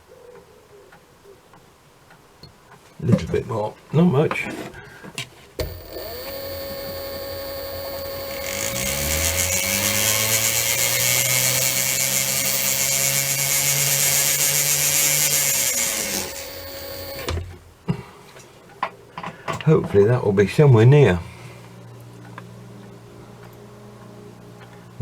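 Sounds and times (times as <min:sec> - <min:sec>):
hissing metal cutting: 0:05.6 - 0:17.4
lathe motor running: 0:05.6 - 0:17.4.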